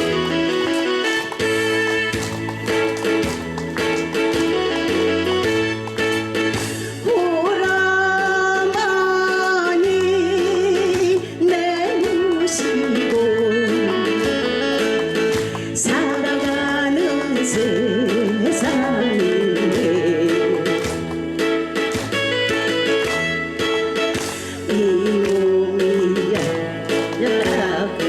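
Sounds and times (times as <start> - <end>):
backing band with guitar: 0.0 - 28.0
person singing with vibrato: 6.9 - 21.0, 24.3 - 28.0.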